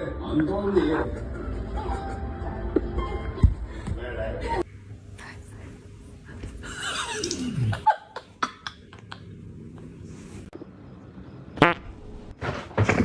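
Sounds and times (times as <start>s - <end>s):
fart-like noise: 11.6s - 11.9s.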